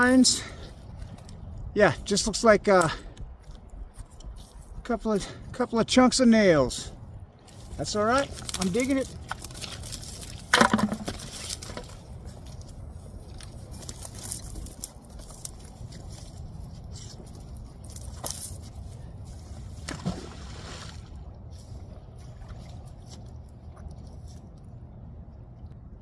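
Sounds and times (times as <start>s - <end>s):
water sloshing and splashing: 7.4s - 16.4s, 17.2s - 24.9s.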